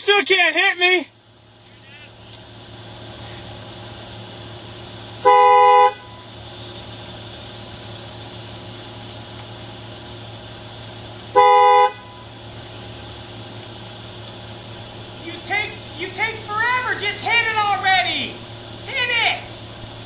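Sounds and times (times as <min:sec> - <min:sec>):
car horn honking: 0:05.2 - 0:06.8, 0:11.3 - 0:12.4.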